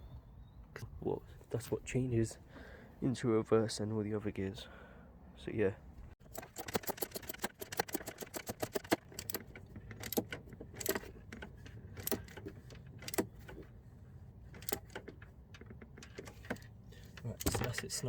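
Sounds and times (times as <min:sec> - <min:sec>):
ratchet wrench clicking: 0:06.3 - 0:11.1.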